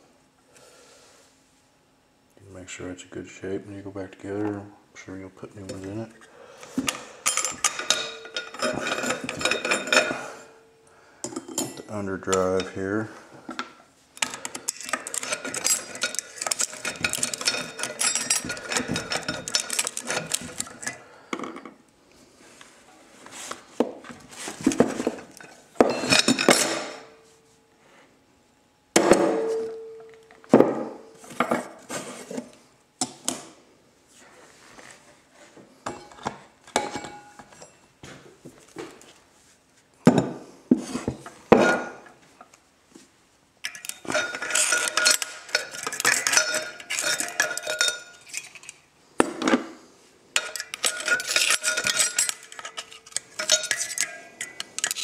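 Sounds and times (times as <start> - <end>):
metal parts clinking and rattling: 7.2 - 10.2, 14.2 - 21.0, 24.6 - 27.1, 43.6 - 48.8, 50.4 - 55.0
metal scrapes and knocks: 14.3 - 20.9.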